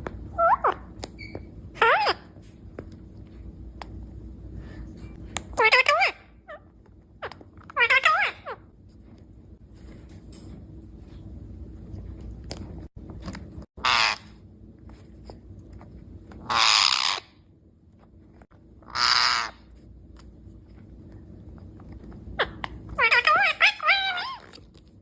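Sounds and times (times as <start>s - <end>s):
parrot screeching: 0.3s - 2.3s, 5.6s - 6.7s, 7.7s - 8.6s, 13.8s - 14.4s, 16.4s - 17.4s, 18.8s - 19.7s, 22.4s - 24.6s.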